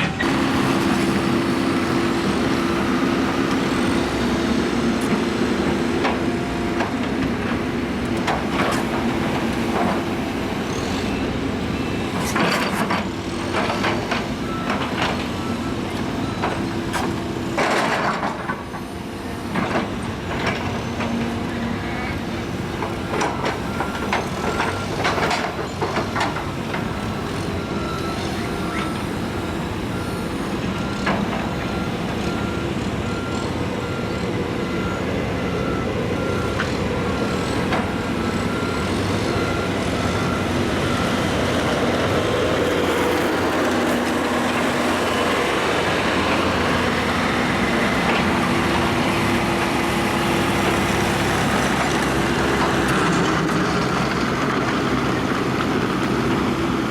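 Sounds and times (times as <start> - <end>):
excavator engine and hydraulics: 0.0 - 56.9
reversing alarm beeping: 0.0 - 56.9.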